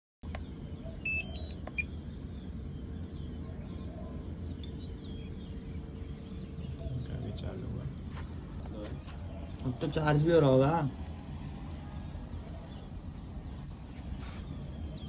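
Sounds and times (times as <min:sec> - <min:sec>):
birds chirping: 0:00.2 - 0:15.0
electronic beeps rising in pitch: 0:01.0 - 0:01.9.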